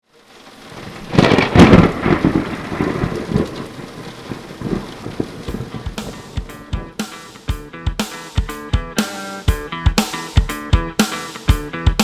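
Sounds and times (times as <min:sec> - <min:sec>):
steady rain: 0:00.0 - 0:08.5
thunderclap rumbling: 0:00.2 - 0:07.6.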